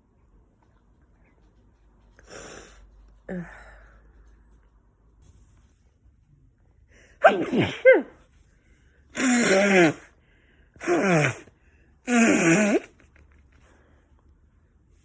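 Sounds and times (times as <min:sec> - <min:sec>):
person sneezing: 0:07.2 - 0:08.2, 0:09.2 - 0:10.1, 0:10.8 - 0:11.5, 0:12.1 - 0:13.0.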